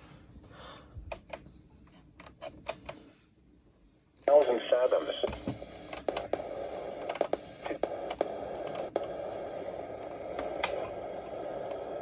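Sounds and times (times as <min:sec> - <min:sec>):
radio static hiss: 0:04.2 - 0:12.0.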